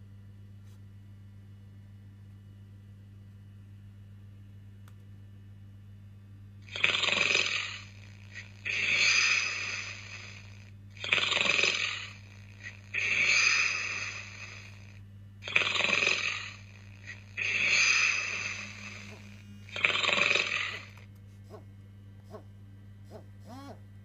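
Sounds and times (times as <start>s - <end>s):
steady low hum: 0.0s - 24.0s
person snoring: 6.6s - 21.0s.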